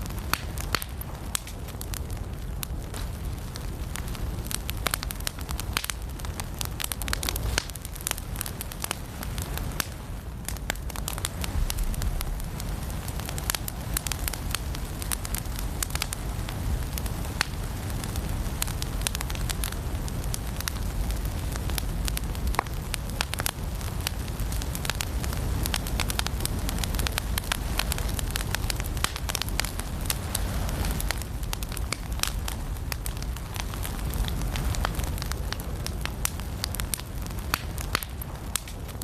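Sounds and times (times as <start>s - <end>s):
firewood crackling and popping: 0.0s - 39.0s
low steady rumble: 0.0s - 39.0s.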